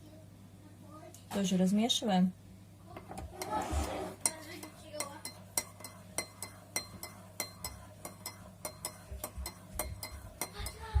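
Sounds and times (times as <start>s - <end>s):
spoon clinking in a cup: 4.2s - 10.9s.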